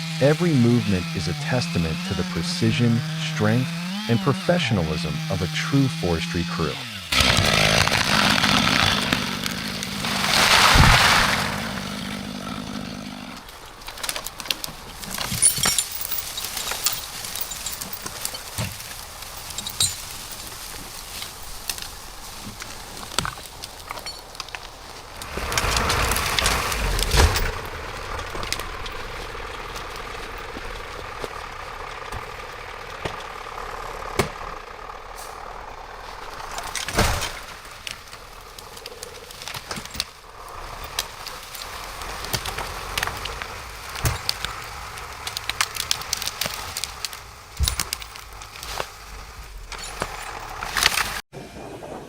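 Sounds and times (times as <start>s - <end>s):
machine engine running: 0.0s - 10.4s, 25.2s - 45.2s.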